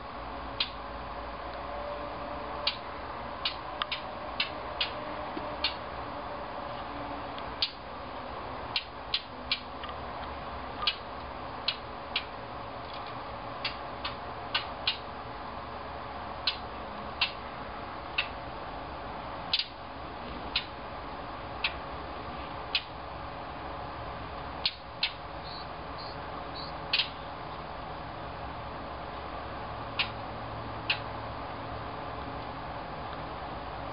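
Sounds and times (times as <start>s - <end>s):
low background hum: 0.0s - 33.9s
bird click calls: 24.6s - 27.2s.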